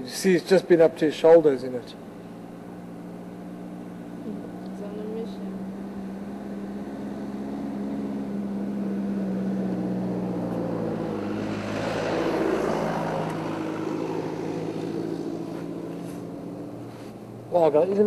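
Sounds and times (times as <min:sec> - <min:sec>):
vehicle engine running: 0:00.0 - 0:18.0
broad rushing noise: 0:04.8 - 0:18.0.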